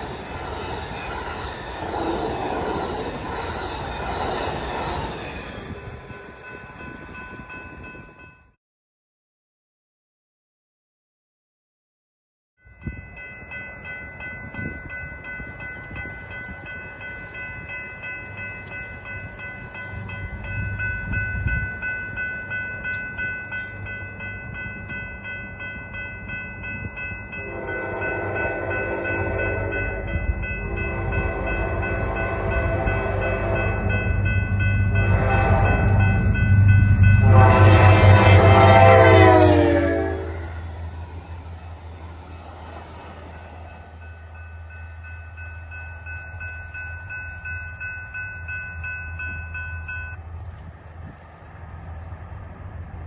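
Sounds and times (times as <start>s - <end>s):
train rumble: 0.0s - 8.4s, 12.8s - 53.0s
crossing signal ringing: 12.6s - 50.6s
locomotive horn blasts: 27.4s - 34.1s, 34.9s - 40.8s.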